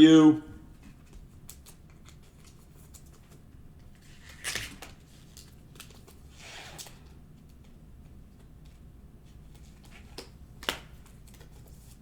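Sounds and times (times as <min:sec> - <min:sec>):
cards clicking and rustling: 0:09.5 - 0:12.0.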